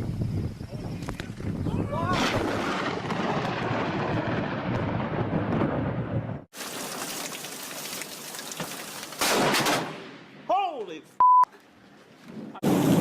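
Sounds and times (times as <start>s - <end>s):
thunder rumbling: 1.5s - 6.5s.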